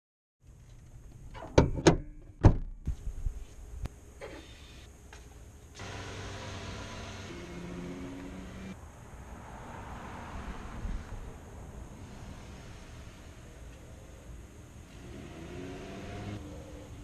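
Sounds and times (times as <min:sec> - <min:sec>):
vehicle running hum: 0:03.9 - 0:17.0.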